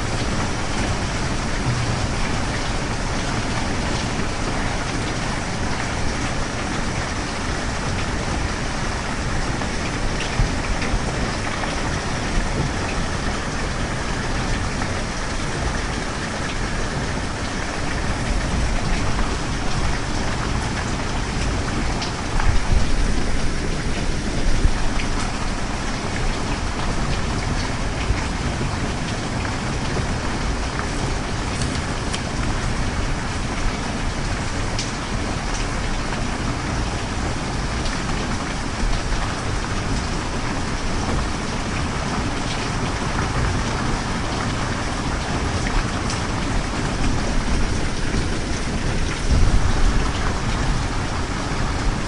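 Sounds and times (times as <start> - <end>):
steady rain hiss: 0.0 - 52.0
raindrop ticks: 30.8 - 32.2.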